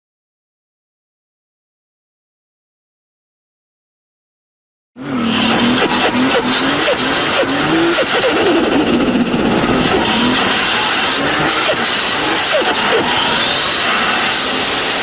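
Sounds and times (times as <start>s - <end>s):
car engine revving: 5.0s - 15.0s
turbo flutter: 5.5s - 15.0s.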